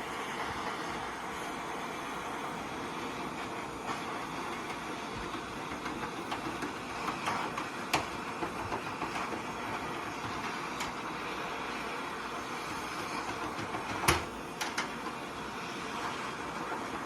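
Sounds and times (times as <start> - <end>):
gas torch flame hissing: 0.0 - 17.0.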